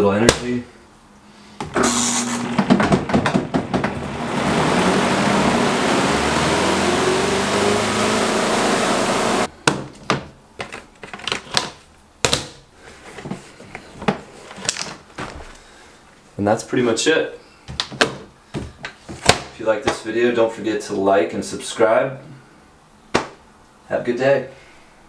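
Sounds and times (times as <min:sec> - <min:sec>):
washing machine motor whirring: 0:01.6 - 0:09.5
clicks and clattering knocks: 0:02.5 - 0:04.2.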